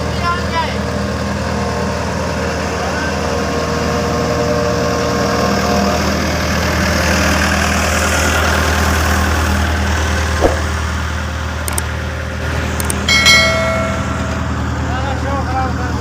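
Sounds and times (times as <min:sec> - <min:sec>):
short knock: 0:10.4 - 0:10.8.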